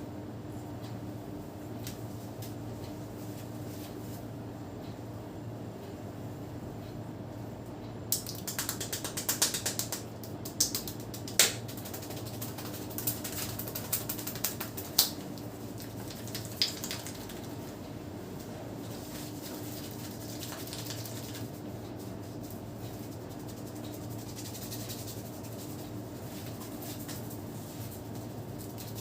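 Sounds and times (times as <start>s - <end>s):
steady low hum: 0.0s - 29.0s
hands snapping clicks on head: 8.1s - 11.8s, 14.3s - 15.2s.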